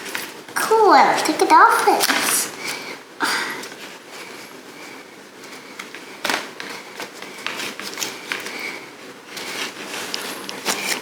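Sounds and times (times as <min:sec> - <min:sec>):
plastic packaging clicks and crinkles: 0:05.4 - 0:11.0.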